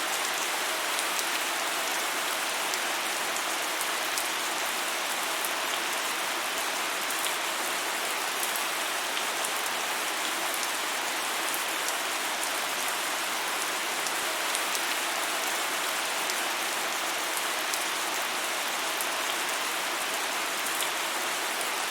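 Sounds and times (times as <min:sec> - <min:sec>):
steady rain falling: 0:00.0 - 0:21.9.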